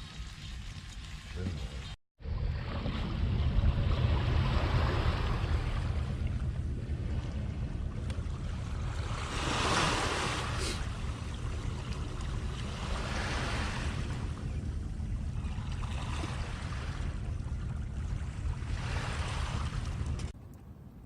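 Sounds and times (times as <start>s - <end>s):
wind rumble on microphone: 2.2s - 21.0s
sea waves washing onto shore: 3.2s - 14.4s.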